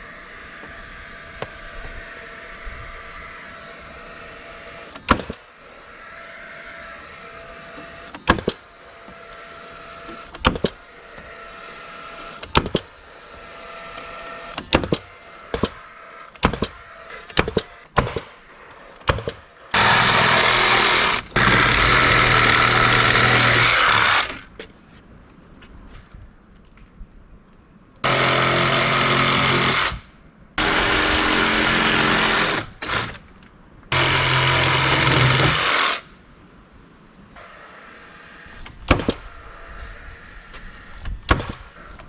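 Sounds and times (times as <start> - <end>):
power tool running: 19.7 - 24.5, 28.0 - 30.0, 30.6 - 33.2, 33.9 - 36.1.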